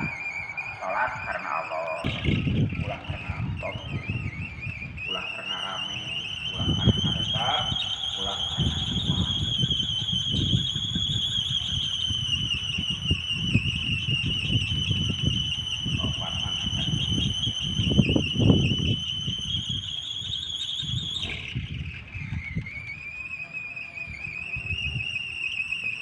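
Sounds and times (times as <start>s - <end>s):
gusty wind on microphone: 0.0s - 26.0s
wooden propeller whining: 0.0s - 26.0s.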